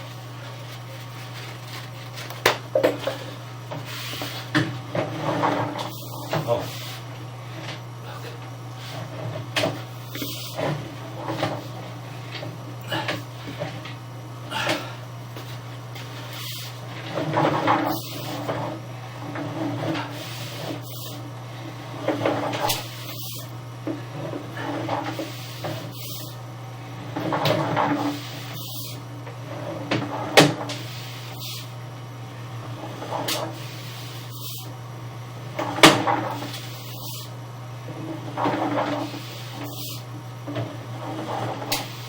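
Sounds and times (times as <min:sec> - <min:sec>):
steady low hum: 0:00.0 - 0:42.0
knocks and scraping clatter: 0:00.4 - 0:06.9, 0:07.5 - 0:14.0, 0:14.6 - 0:21.1, 0:37.9 - 0:42.0.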